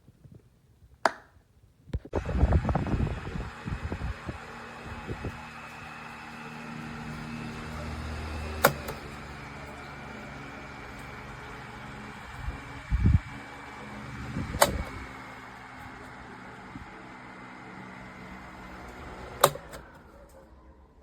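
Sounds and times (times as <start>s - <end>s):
electric fan whirring: 2.0s - 21.0s
fan switch click: 6.9s - 9.5s, 14.3s - 15.2s, 18.8s - 20.1s.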